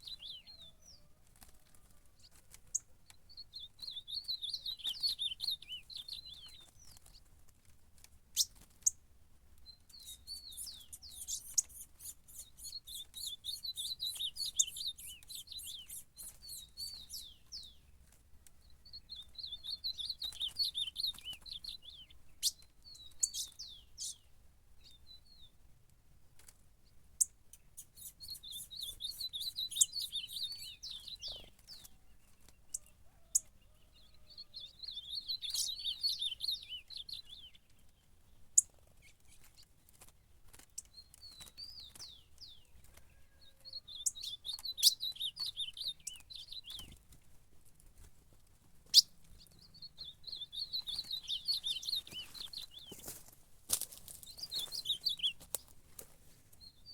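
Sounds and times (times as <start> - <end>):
bird chips and clicks: 1.4 - 9.0, 9.8 - 24.2, 27.2 - 33.5, 35.0 - 38.0, 38.6 - 48.1, 48.8 - 53.2, 53.8 - 56.9
bird singing fast high warbling: 10.0 - 17.7, 27.8 - 31.5, 43.8 - 46.9, 48.9 - 53.0, 54.3 - 55.4.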